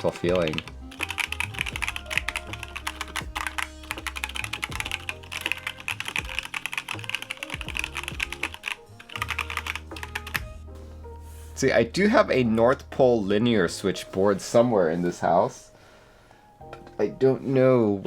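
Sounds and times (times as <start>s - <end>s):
mechanical keyboard typing: 0.0s - 10.5s
background music: 0.0s - 18.0s.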